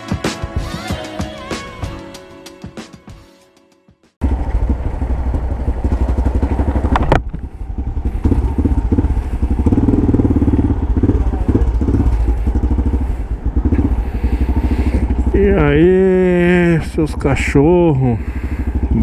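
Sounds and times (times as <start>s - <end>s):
motorcycle engine throbbing: 4.2s - 19.0s.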